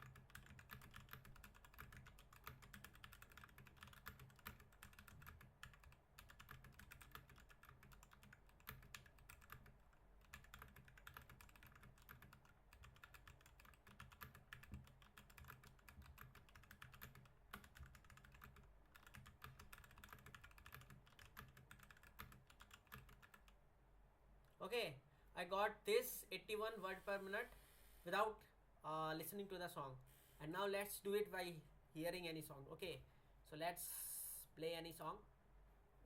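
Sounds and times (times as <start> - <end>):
faint rapid keyboard typing: 0.0 - 23.6.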